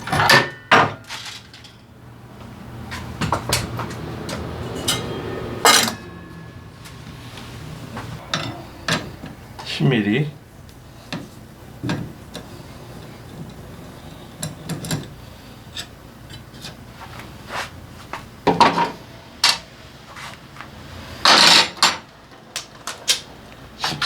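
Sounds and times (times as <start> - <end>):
metal tools clinking and knocking: 0.0 - 1.9, 2.9 - 7.0.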